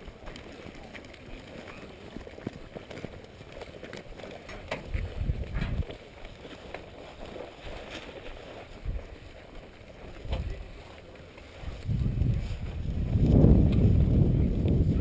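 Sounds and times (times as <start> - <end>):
footsteps: 0.0 - 15.0
wind buffeting microphone: 4.6 - 6.0, 8.6 - 10.8, 11.5 - 15.0.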